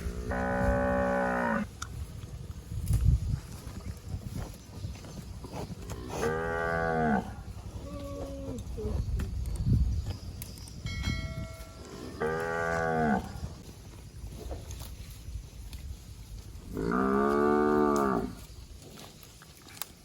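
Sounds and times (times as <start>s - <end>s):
cow mooing: 0.0s - 1.7s, 6.0s - 8.3s, 11.8s - 13.3s, 16.7s - 18.4s.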